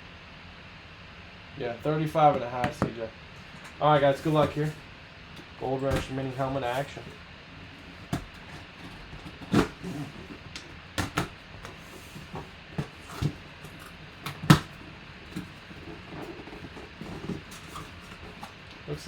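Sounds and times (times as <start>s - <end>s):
packaging being opened: 3.5s - 4.8s, 5.7s - 18.8s.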